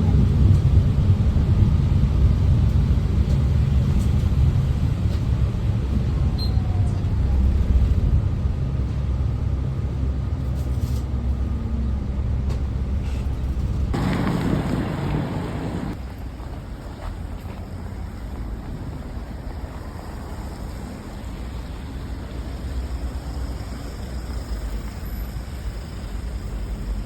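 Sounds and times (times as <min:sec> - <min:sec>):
bus engine and road rumble: 0:00.0 - 0:27.0.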